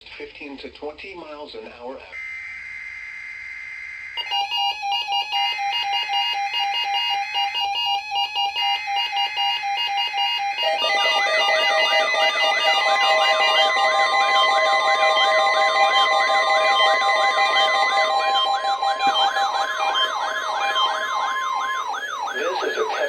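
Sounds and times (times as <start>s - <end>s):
steady high electronic tone: 10.6s - 23.0s
synthesized electronic music: 10.6s - 23.0s.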